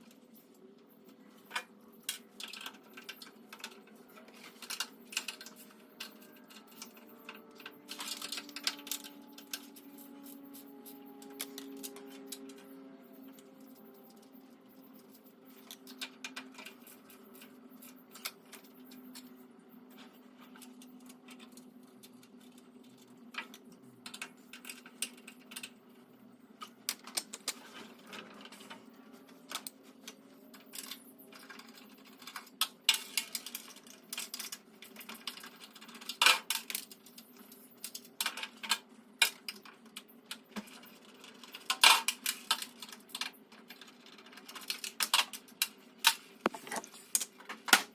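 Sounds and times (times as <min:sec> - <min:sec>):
faint low hum: 0:00.0 - 0:36.2.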